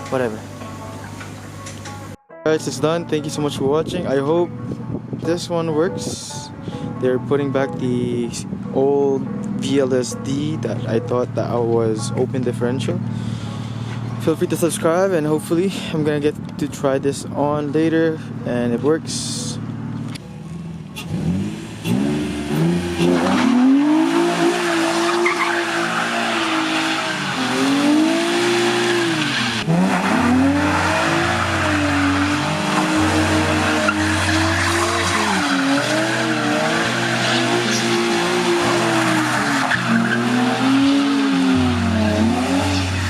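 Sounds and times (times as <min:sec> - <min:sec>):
car engine revving: 0:18.2 - 0:43.0
tyres squealing: 0:21.9 - 0:43.0.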